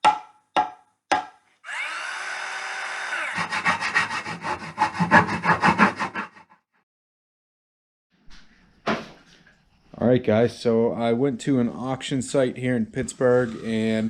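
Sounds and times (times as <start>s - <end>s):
tool scraping wood: 3.3s - 6.5s.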